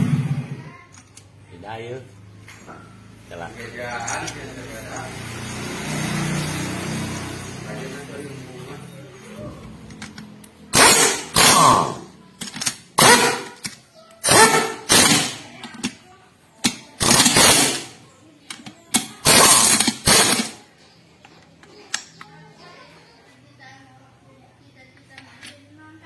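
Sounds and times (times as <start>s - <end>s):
power tool bursts: 10.7s - 12.1s, 13.0s - 13.6s, 14.2s - 15.4s, 17.0s - 18.0s, 19.0s - 20.6s.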